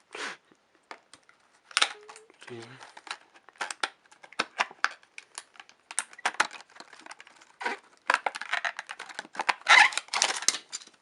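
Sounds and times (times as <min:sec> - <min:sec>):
packaging clicks and crinkles: 0:00.9 - 0:11.0.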